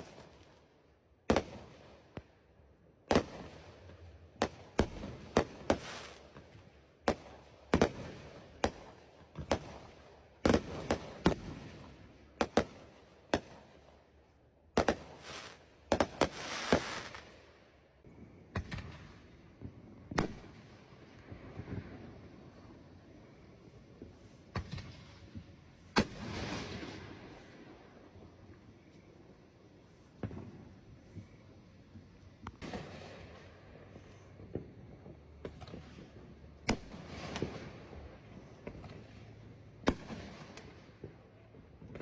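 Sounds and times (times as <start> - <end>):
fireworks bangs: 0.0 - 0.6, 1.3 - 2.3, 3.1 - 13.8, 14.8 - 17.5, 29.8 - 42.0
fireworks crackling: 0.0 - 0.7, 3.1 - 13.6, 14.8 - 17.6.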